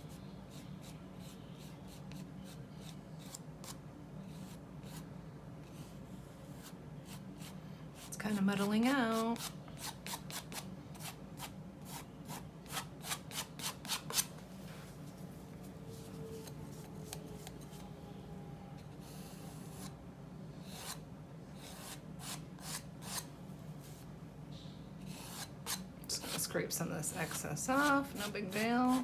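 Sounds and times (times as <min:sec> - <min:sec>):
low steady hum: 0:00.0 - 0:29.0.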